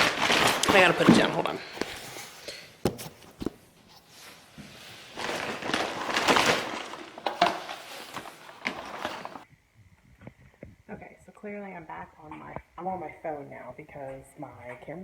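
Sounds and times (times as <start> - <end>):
rustling: 0.0 - 9.5.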